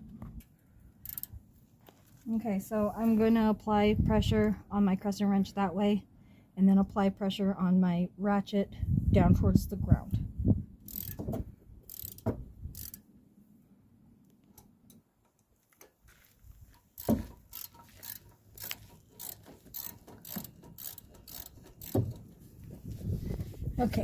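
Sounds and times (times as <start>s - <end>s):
ratchet clicking: 1.0s - 1.4s, 10.9s - 13.0s, 17.0s - 22.4s.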